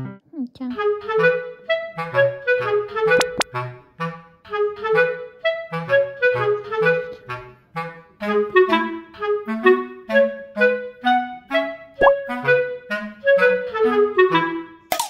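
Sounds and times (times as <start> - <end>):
bouncy background music: 0.0 - 3.6.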